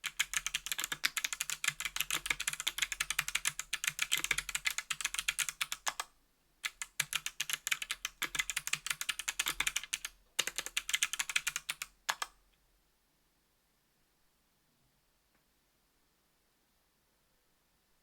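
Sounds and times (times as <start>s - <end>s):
fast typing on clicky keyboard: 0.0s - 12.4s.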